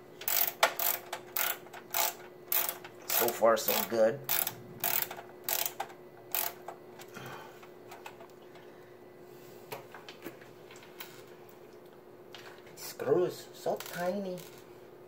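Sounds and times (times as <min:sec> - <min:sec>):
screwdriver clicking on screws: 0:00.3 - 0:06.6.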